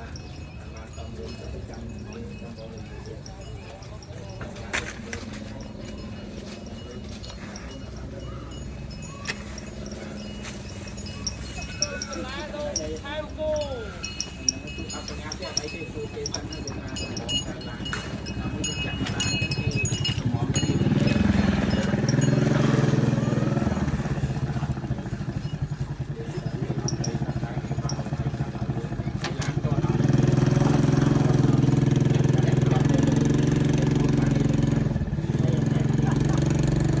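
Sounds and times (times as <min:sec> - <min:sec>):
small engine running: 0:00.0 - 0:37.0.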